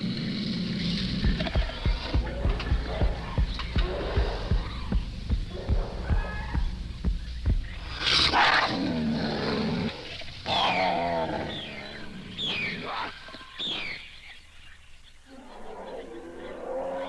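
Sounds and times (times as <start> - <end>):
high falling shrieks: 0.8 - 14.0.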